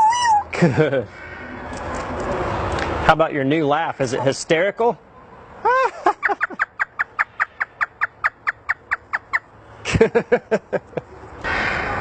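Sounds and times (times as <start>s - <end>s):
parrot imitating laughter: 5.6s - 7.2s.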